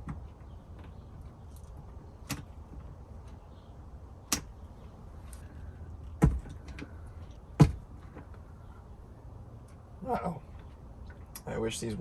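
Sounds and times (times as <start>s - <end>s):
dull thump: 6.2s - 6.6s, 7.6s - 8.2s.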